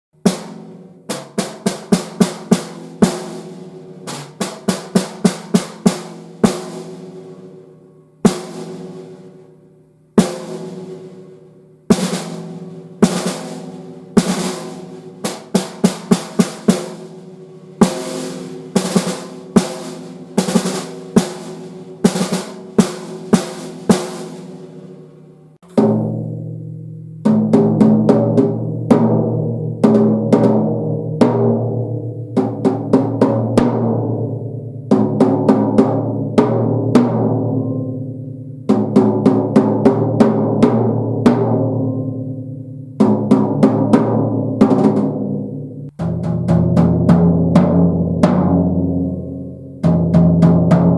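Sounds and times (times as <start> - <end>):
drums struck: 0.2 - 7.5, 8.2 - 9.4, 10.2 - 11.3, 11.9 - 50.9
deeper-pitched drum: 25.6 - 50.9.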